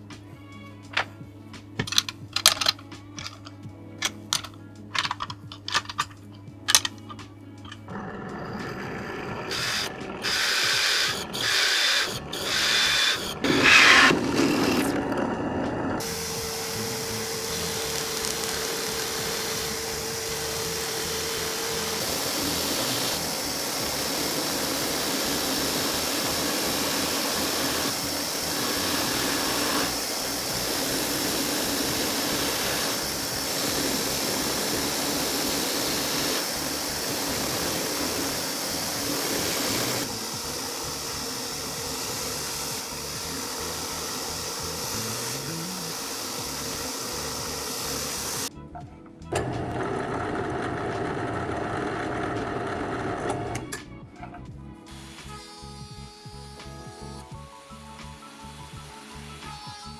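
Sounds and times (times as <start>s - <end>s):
power tool motor running: 7.9s - 48.5s.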